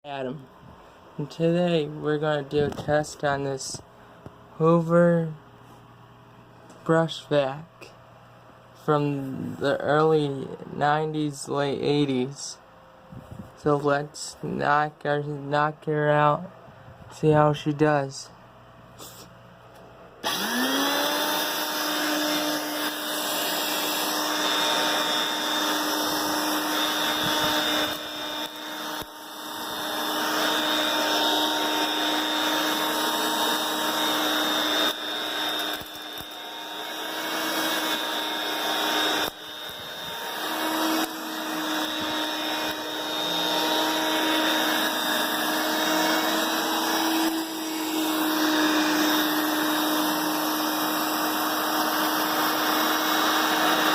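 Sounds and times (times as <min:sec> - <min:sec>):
handheld vacuum cleaner whine: 0:20.2 - 0:53.9.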